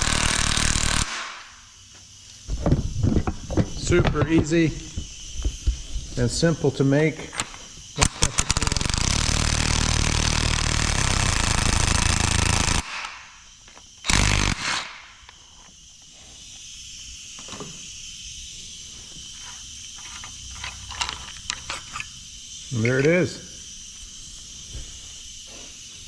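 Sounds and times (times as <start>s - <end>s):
power tool running: 0.0s - 1.4s, 7.4s - 13.1s, 14.0s - 15.0s.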